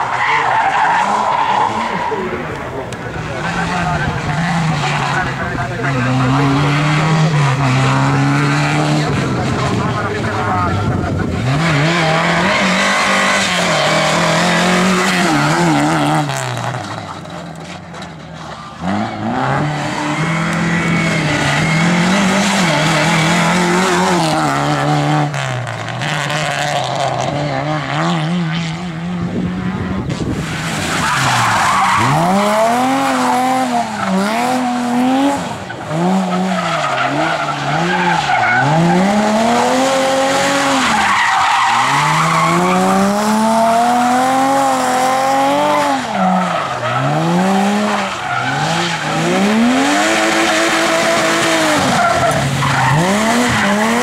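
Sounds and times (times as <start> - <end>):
rally car engine revving: 0.0 - 54.0
tyres squealing: 35.7 - 43.0.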